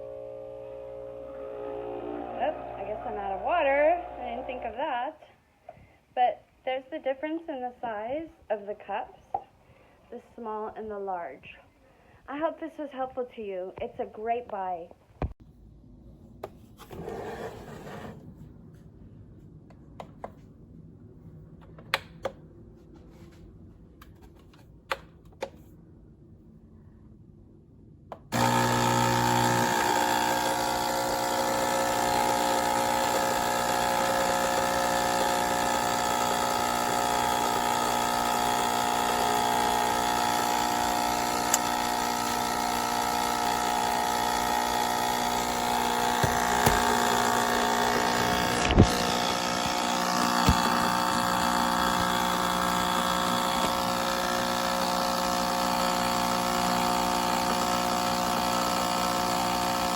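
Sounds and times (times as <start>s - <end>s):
espresso machine pump buzzing: 0.0s - 4.8s, 28.3s - 59.9s.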